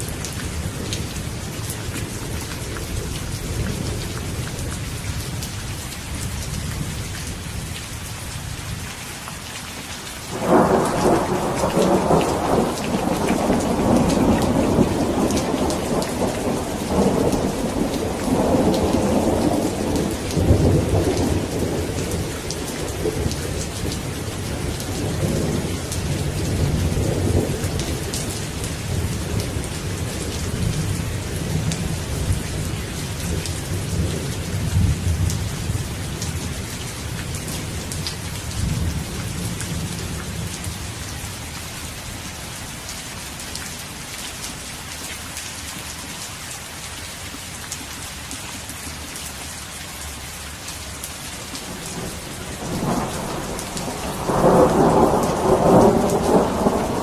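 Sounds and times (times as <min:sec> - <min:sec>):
heavy rain: 0:00.0 - 0:57.0
thunderclap: 0:10.3 - 0:21.8, 0:51.9 - 0:57.0
thunder rumbling: 0:10.3 - 0:40.6, 0:51.7 - 0:57.0.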